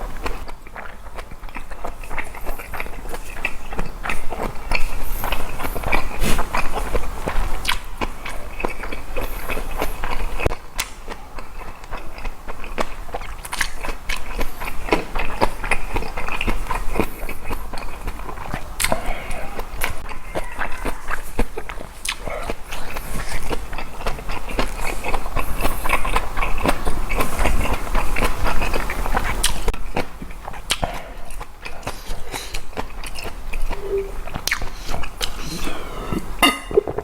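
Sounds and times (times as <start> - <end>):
crunchy chewing: 0.0 - 37.0
mouth clicks: 30.6 - 37.0.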